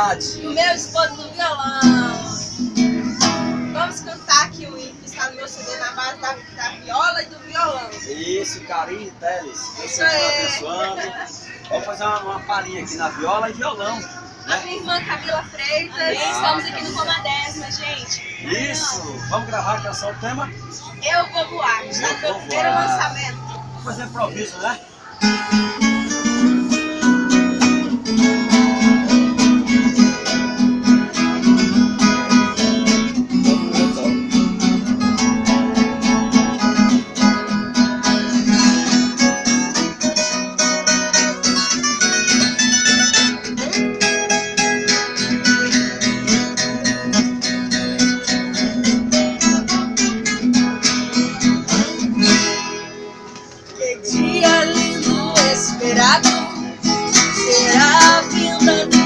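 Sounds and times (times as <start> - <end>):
acoustic guitar strumming: 0.0 - 59.0
viola caipira plucking: 25.1 - 59.0.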